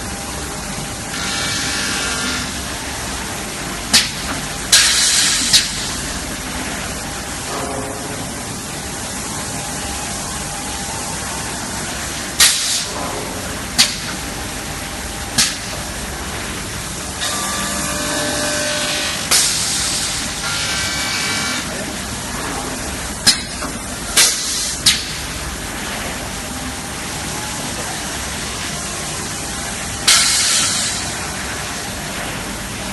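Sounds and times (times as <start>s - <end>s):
glass polishing machine running: 17.2s - 21.8s.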